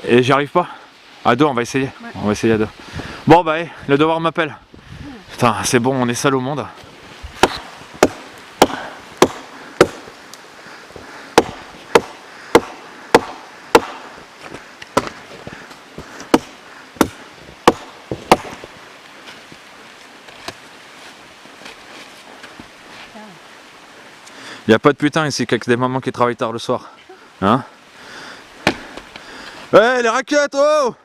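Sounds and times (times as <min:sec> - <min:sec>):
blade chopping into tree trunk: 0:07.4 - 0:10.1, 0:11.4 - 0:14.1, 0:14.9 - 0:15.2, 0:16.2 - 0:18.7, 0:28.6 - 0:29.1.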